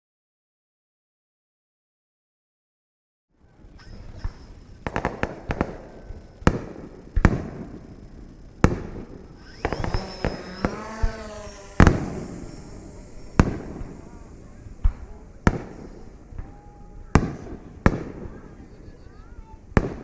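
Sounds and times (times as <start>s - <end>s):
fireworks bangs: 3.6s - 20.0s.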